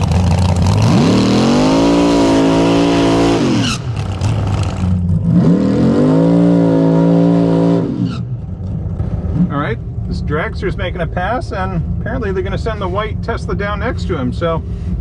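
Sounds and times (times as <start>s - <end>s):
dragster engine revving: 0.0s - 8.4s.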